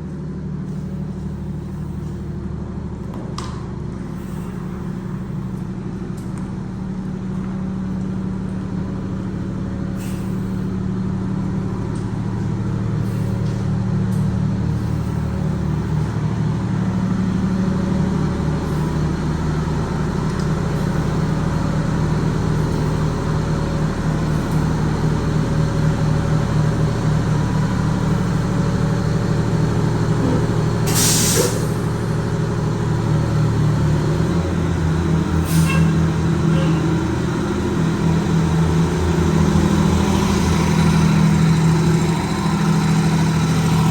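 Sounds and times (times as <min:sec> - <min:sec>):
bus engine droning: 0:00.0 - 0:43.9
air brake hissing: 0:09.9 - 0:10.8, 0:12.9 - 0:13.8, 0:30.1 - 0:32.1, 0:35.4 - 0:37.0.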